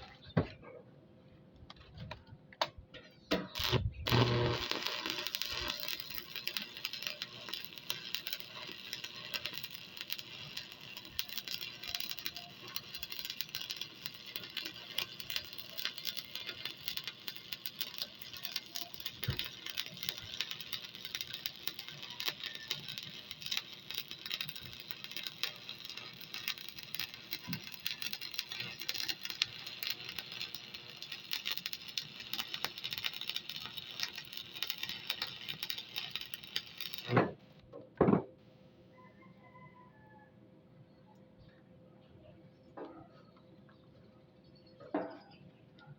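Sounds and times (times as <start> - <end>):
welding arc crackling: 3.3 - 37.6.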